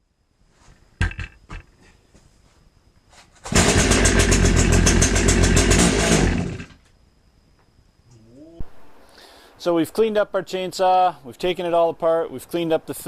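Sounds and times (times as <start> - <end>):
chainsaw starting and running: 3.5 - 6.8.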